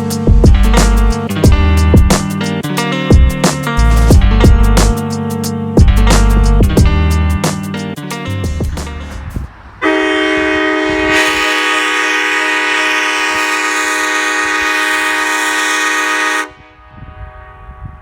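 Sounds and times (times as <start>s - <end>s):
guitar music: 0.0s - 16.2s
train horn chord: 9.8s - 18.0s.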